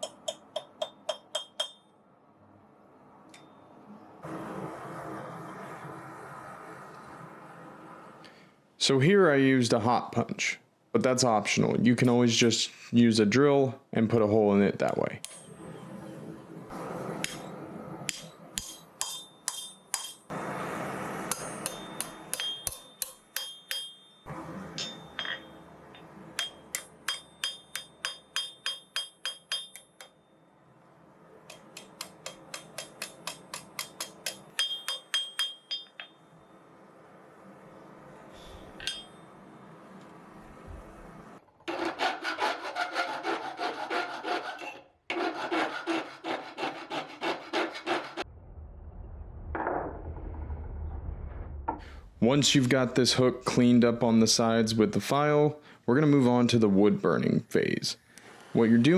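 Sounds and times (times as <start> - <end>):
hammer strikes on steel: 0.0 - 1.9, 18.1 - 20.3, 21.2 - 30.2, 31.5 - 36.2, 38.8 - 39.2
file rasping on steel: 41.7 - 48.2.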